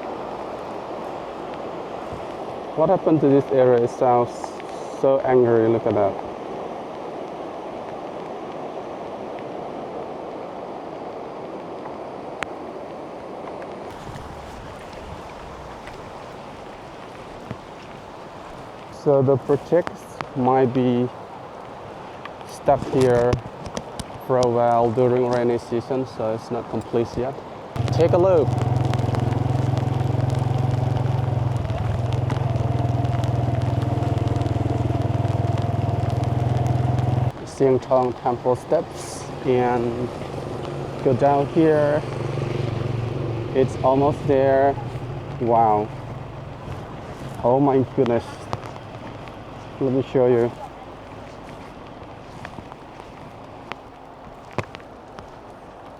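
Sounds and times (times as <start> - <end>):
floodwater rushing: 0.0 - 55.9
wind rumble on microphone: 6.1 - 26.0, 26.7 - 55.9
small motorcycle engine running: 27.8 - 37.3.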